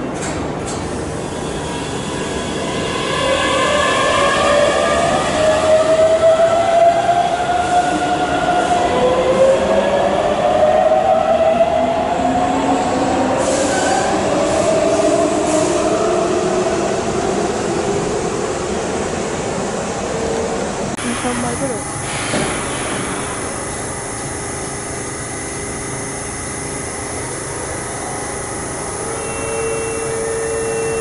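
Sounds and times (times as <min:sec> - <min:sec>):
electric train motor whine: 0:21.0 - 0:31.0.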